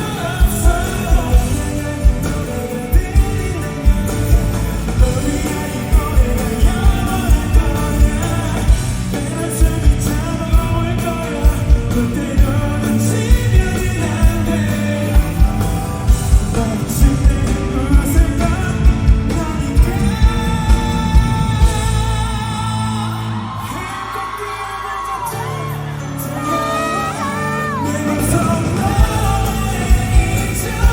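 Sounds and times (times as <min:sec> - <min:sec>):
live pop-rock band: 0:00.0 - 0:30.9
man singing: 0:00.0 - 0:30.9.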